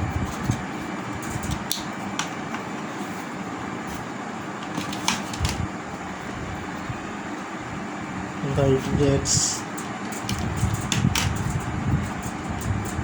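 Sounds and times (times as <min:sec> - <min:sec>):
fan-like room hum: 0:00.0 - 0:13.0.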